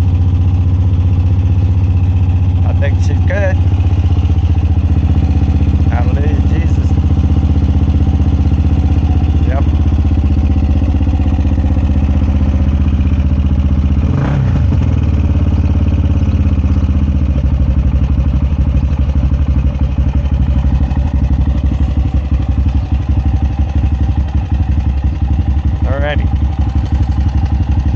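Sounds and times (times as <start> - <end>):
motorcycle engine idling: 0.0 - 27.9.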